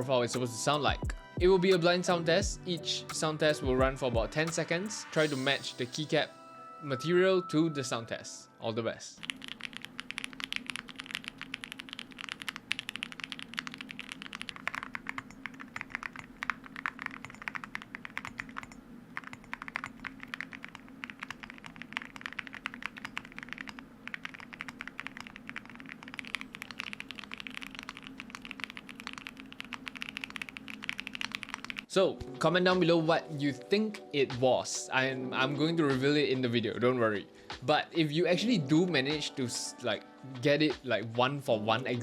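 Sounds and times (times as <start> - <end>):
fast typing on mechanical keyboard: 9.2 - 31.9.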